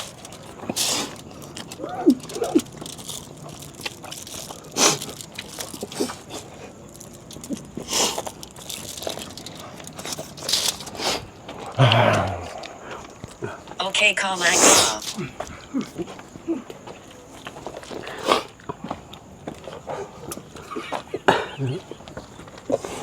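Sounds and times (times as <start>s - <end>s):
chewing and crunching food: 0.0s - 23.0s
mouth clicks: 10.9s - 13.5s.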